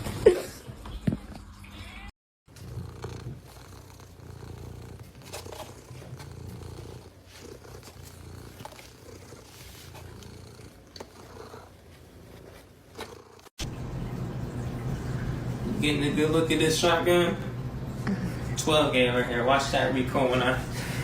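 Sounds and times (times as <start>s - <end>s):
cat purring: 2.5s - 13.5s.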